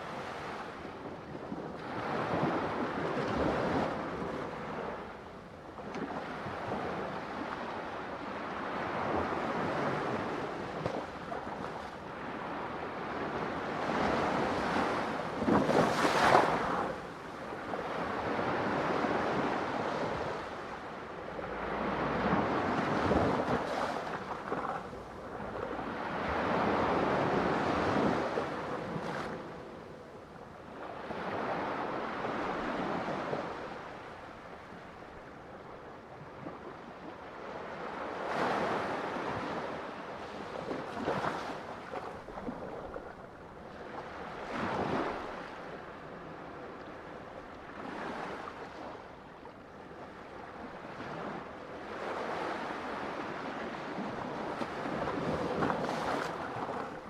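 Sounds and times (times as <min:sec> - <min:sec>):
ocean waves breaking: 0:50.8 - 0:57.0.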